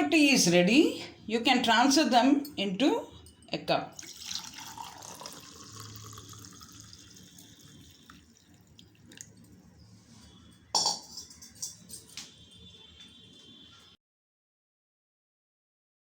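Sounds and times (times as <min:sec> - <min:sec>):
tea pouring into a cup: 0:03.9 - 0:09.7
sharp clink: 0:10.8 - 0:12.2.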